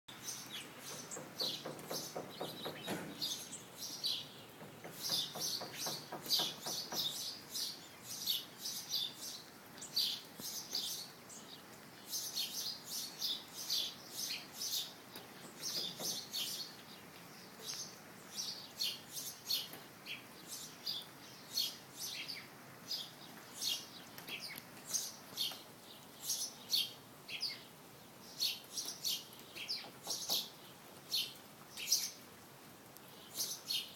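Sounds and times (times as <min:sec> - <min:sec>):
small birds chirping: 0:00.1 - 0:33.9
woodpecker pecking on wooden siding: 0:00.8 - 0:03.5, 0:04.4 - 0:07.3, 0:15.2 - 0:16.6, 0:29.8 - 0:30.5.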